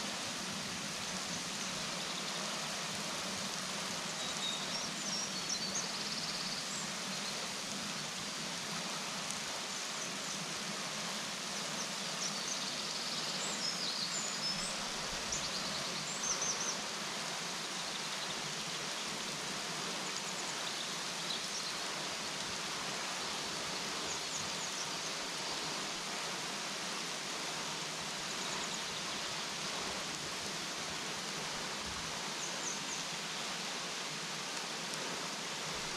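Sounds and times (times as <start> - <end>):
waterfall rushing: 13.4 - 35.9.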